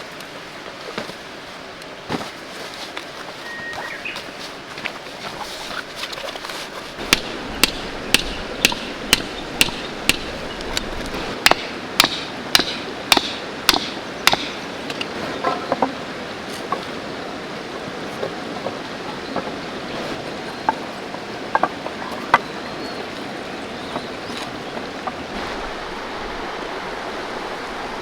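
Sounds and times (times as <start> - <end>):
hammer driving a tent peg: 7.0 - 14.6.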